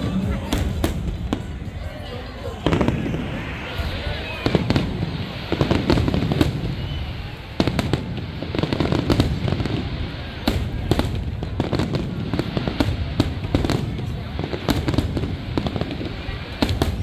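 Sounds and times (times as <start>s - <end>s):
low rumble: 0.0s - 6.7s
fireworks bangs and crackles: 0.0s - 17.0s.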